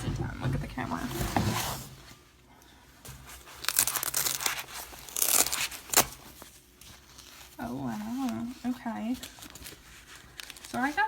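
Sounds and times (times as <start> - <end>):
plastic packaging crinkling and tearing: 3.4 - 11.0.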